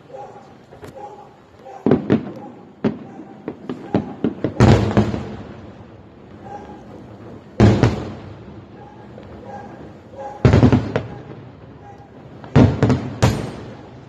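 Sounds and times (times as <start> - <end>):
fireworks booming: 0.0 - 14.0
fireworks cracking: 0.0 - 14.0.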